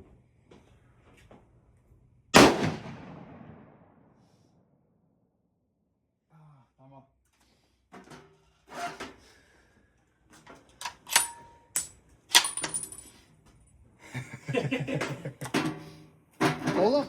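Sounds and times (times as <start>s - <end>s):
rifle metallic clicks and clatter: 10.3s - 13.2s.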